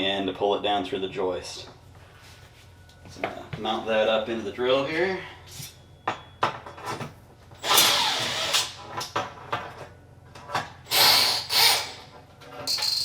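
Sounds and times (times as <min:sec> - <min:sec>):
power drill whining: 0:07.6 - 0:08.8, 0:10.9 - 0:12.1.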